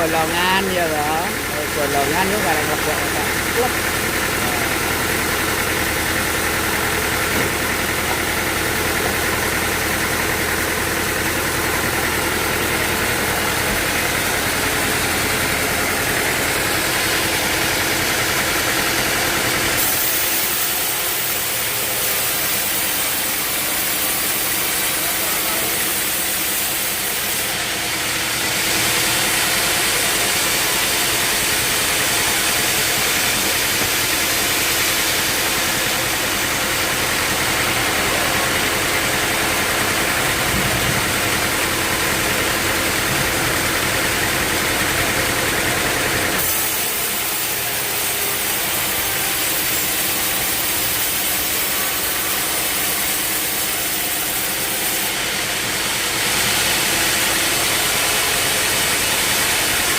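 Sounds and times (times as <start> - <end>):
sawmill machinery running: 0.0 - 59.9.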